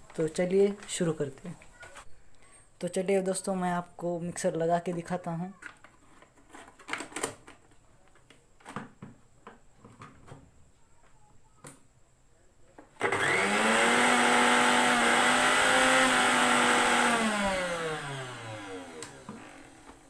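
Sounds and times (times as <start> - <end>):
mixer grinder motor whining: 13.0 - 20.0.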